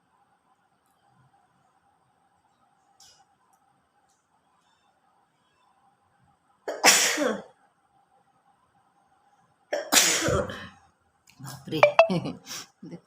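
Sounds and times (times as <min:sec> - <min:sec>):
woman sneezing: 0:06.9 - 0:07.4, 0:09.9 - 0:10.6.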